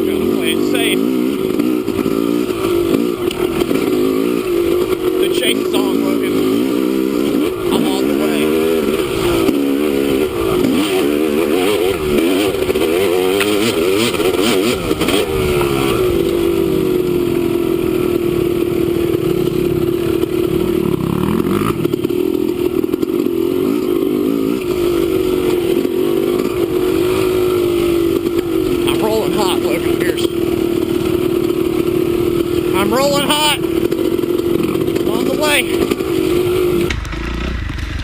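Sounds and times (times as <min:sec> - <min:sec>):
dirt bike engine revving: 0:00.0 - 0:38.0
clatter: 0:01.5 - 0:05.3, 0:11.6 - 0:16.4, 0:33.8 - 0:38.0.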